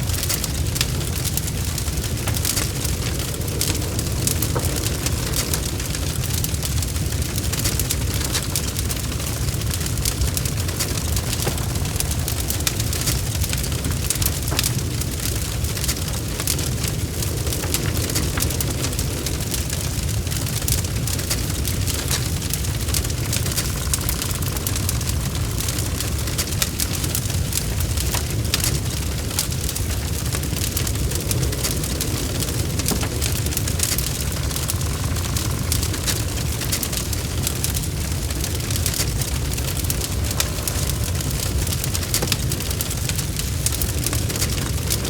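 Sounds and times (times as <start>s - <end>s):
low rumble of flames: 0.0s - 45.0s
wood fire crackling: 0.0s - 45.0s.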